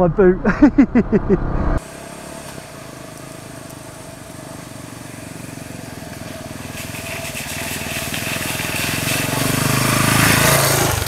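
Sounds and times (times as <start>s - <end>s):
motorcycle engine running: 1.8s - 11.0s.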